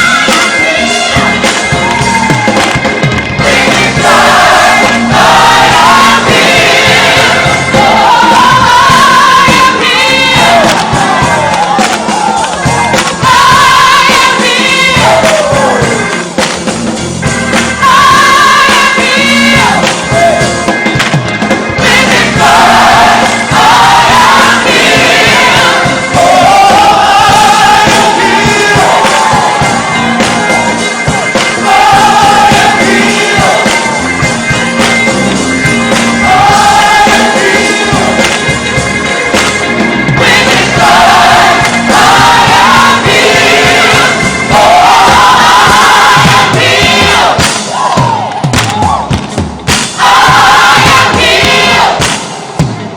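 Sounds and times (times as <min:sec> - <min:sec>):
choir singing gospel: 0:00.0 - 0:48.9, 0:49.8 - 0:52.9
backing music: 0:00.0 - 0:52.9.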